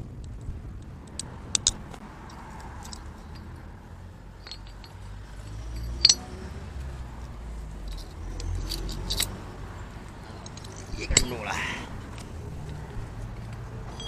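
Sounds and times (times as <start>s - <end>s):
metal parts clinking: 1.1s - 3.6s, 4.3s - 6.3s, 7.8s - 9.4s, 10.2s - 11.5s.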